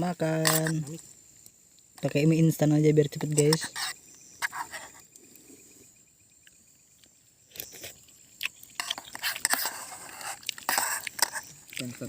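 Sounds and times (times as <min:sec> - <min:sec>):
night insects trilling: 0:00.0 - 0:12.0
crackling and rustling: 0:07.5 - 0:12.0.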